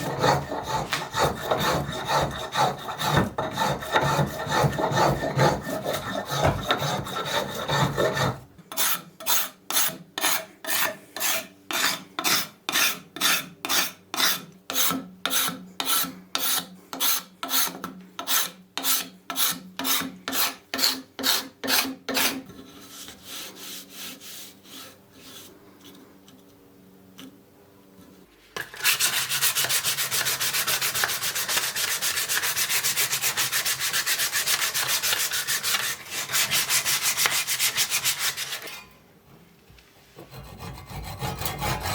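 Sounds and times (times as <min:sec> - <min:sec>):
sanding strokes on wood: 0:00.0 - 0:13.4, 0:18.3 - 0:25.5, 0:28.8 - 0:38.8.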